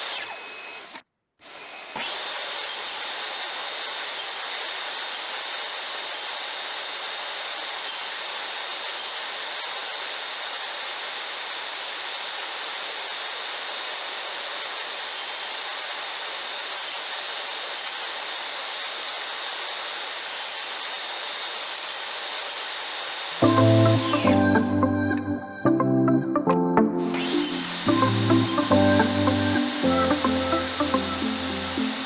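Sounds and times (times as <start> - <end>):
power tool running on wood: 0.0 - 24.8, 27.0 - 32.0
faint high whine: 27.0 - 32.0.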